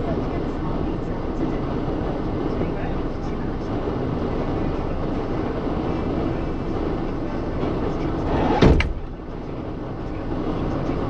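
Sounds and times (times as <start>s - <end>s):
loud panel slam: 8.4s - 9.0s.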